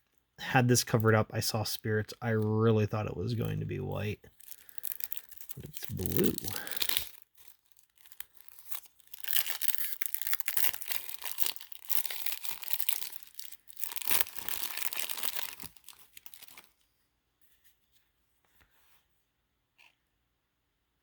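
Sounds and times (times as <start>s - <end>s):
foil wrapper tearing and crinkling: 3.4s - 16.8s.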